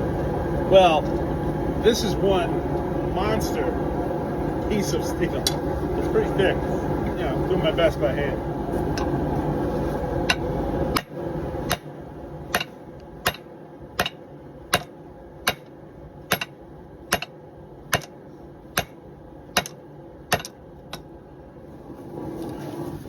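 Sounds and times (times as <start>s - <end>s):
hammer striking hot steel: 10.2s - 21.1s.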